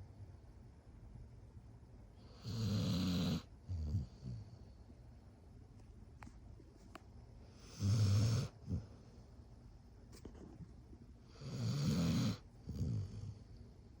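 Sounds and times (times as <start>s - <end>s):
dog snoring: 2.3s - 4.5s, 7.6s - 8.9s, 11.3s - 13.4s.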